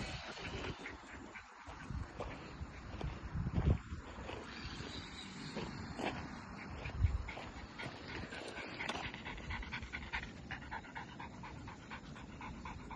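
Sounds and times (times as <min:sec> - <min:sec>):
dog panting: 0:00.0 - 0:02.8, 0:06.4 - 0:12.9.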